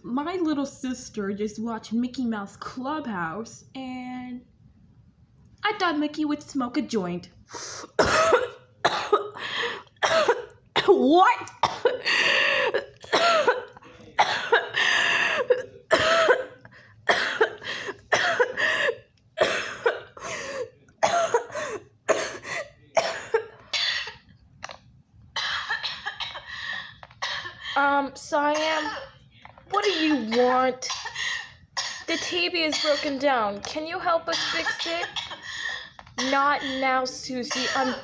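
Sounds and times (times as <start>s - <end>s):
person coughing: 7.8s - 11.0s, 11.6s - 24.2s, 29.8s - 33.2s, 34.3s - 38.0s.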